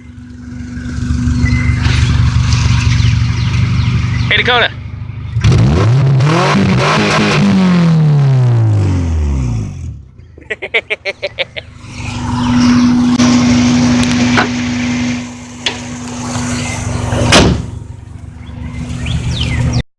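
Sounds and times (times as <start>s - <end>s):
knocking car engine: 0.0s - 7.9s, 13.0s - 19.8s
sharp bang: 17.2s - 17.8s.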